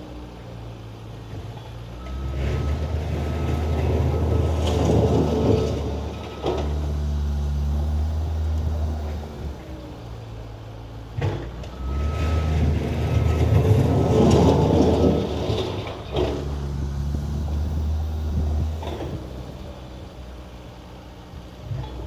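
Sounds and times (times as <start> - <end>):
skid steer engine running: 0.0 - 22.0
backup alarm beeping: 11.7 - 15.5.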